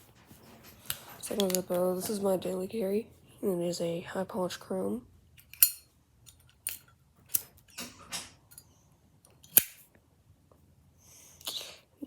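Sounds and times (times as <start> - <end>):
lighter lid clicking and snapping: 9.4 - 9.8.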